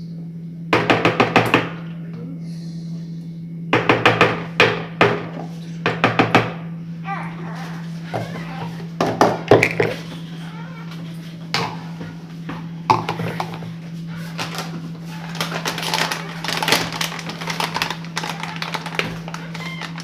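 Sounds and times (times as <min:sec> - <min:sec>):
utensils and containers clattering: 0:08.1 - 0:10.3, 0:12.9 - 0:20.0.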